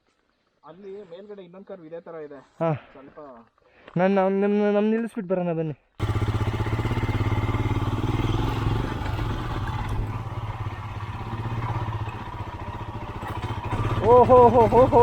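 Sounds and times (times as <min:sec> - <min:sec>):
motorcycle engine idling: 0:06.0 - 0:15.0.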